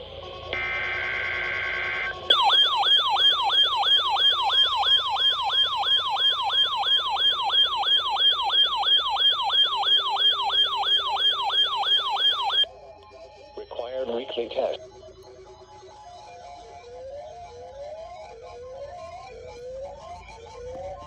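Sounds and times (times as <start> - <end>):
electronic alert siren: 0.6 - 12.7.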